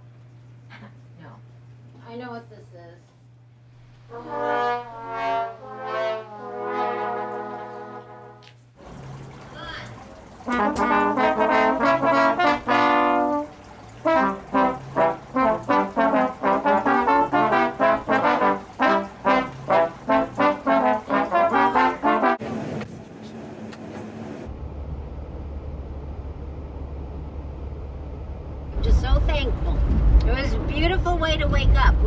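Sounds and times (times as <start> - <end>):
trombone playing loudly: 4.1 - 8.4, 10.3 - 22.4
low steady rumble: 24.5 - 32.0.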